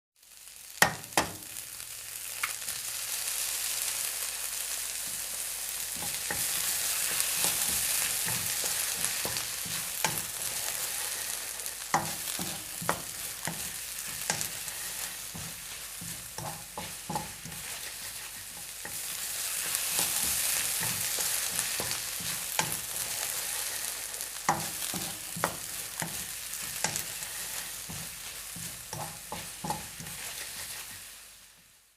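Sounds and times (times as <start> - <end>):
egg sizzling in hot oil: 0.2 - 31.9.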